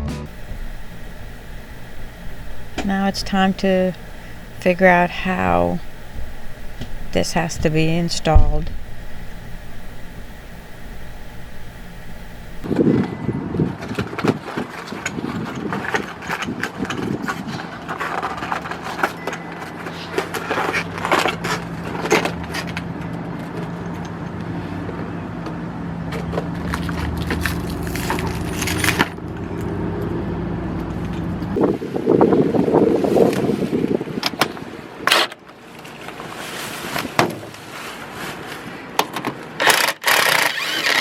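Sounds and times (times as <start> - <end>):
steady low hum: 0.1 - 12.7.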